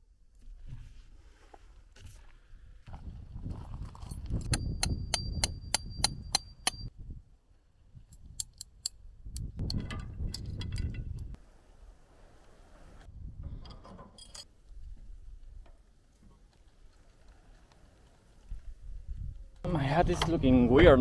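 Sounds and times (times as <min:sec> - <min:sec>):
sharp metallic clicks: 0:04.1 - 0:06.9, 0:08.1 - 0:10.5.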